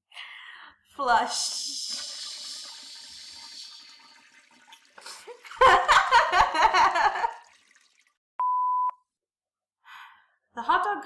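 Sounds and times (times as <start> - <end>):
steady beep: 8.4 - 9.0.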